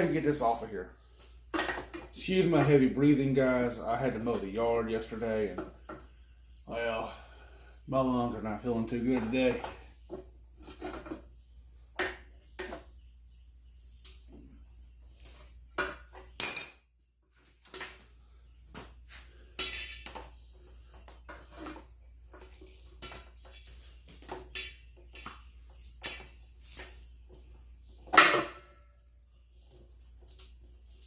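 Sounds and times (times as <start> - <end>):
metal tools clinking and clanking: 16.1 - 16.9.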